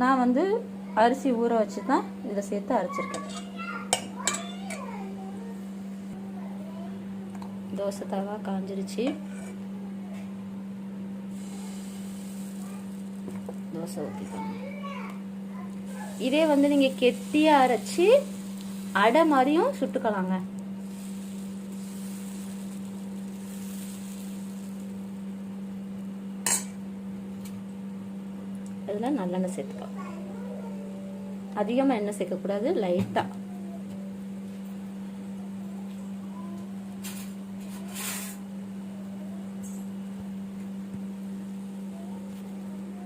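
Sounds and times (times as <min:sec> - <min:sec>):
steady low hum: 0:00.0 - 0:43.0
batter hissing on hot griddle: 0:11.3 - 0:13.6, 0:15.9 - 0:20.0, 0:20.7 - 0:25.5, 0:37.9 - 0:38.4.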